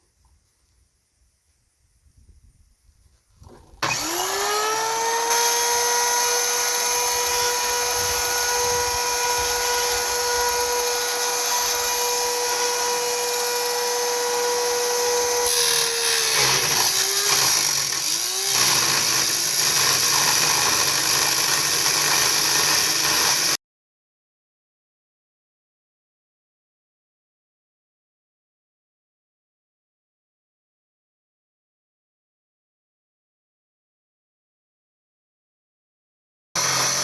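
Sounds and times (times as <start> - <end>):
circular saw whining: 3.4 - 23.6, 36.6 - 37.0
disc grinding through steel: 3.8 - 23.6, 36.6 - 37.0.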